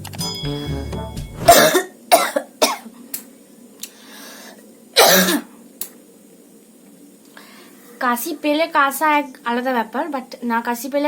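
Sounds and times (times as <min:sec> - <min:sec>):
woman coughing: 0:01.5 - 0:02.9, 0:05.0 - 0:05.5.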